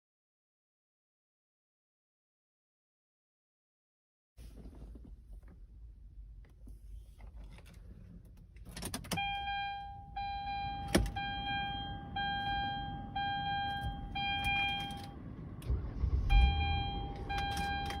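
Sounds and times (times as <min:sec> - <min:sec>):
car warning chime: 0:09.1 - 0:18.0.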